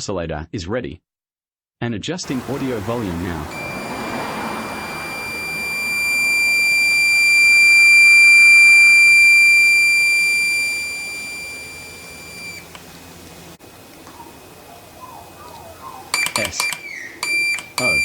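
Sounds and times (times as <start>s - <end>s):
high-pitched oscillator tone: 2.3s - 12.7s, 16.2s - 18.0s.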